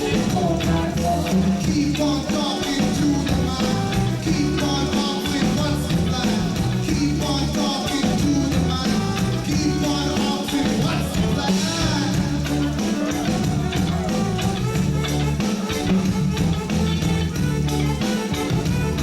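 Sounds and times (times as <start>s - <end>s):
bass line: 0.0s - 19.0s
drums and percussion: 0.0s - 19.0s
reggae band playing: 0.0s - 19.0s.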